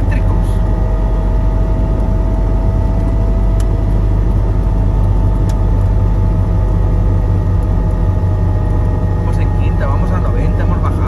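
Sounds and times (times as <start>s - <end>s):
car engine and road drone: 0.0s - 11.0s
faint steady whine: 0.0s - 11.0s.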